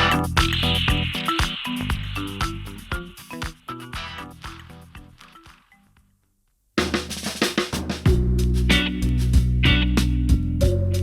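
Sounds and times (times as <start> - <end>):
steady bass line: 0.0 - 3.2, 8.1 - 11.0
band music: 0.0 - 5.3, 8.0 - 11.0
drum kit: 0.0 - 5.7, 6.8 - 11.0.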